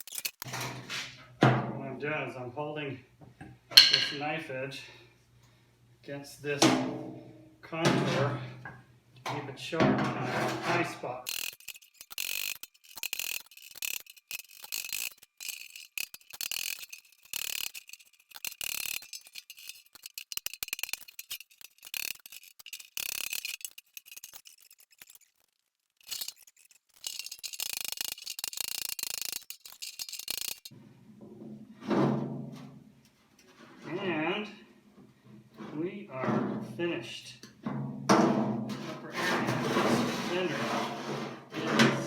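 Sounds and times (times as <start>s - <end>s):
hand tool rasping on sheet metal: 10.1s - 25.4s, 38.7s - 41.8s.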